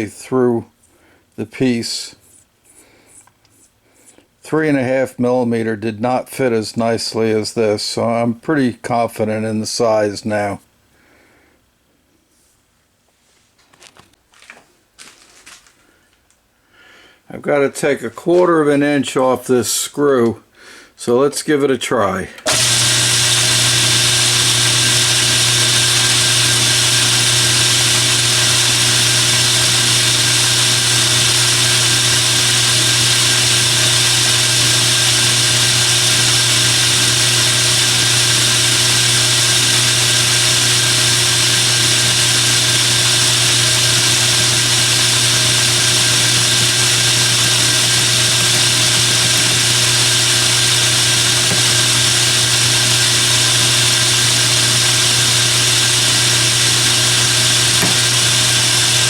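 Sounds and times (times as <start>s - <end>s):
metal lathe cutting: 22.5s - 59.0s.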